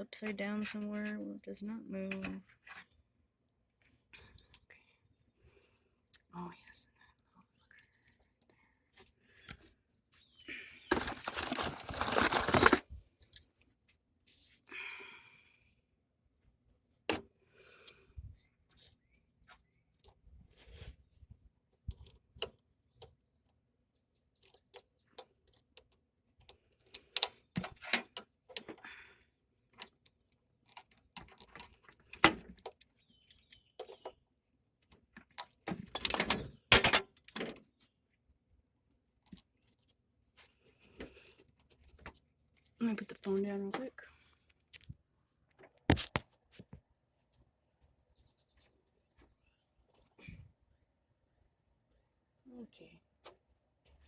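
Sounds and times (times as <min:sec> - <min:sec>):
metallic clicks and clinks of tools: 0:35.9 - 0:37.5.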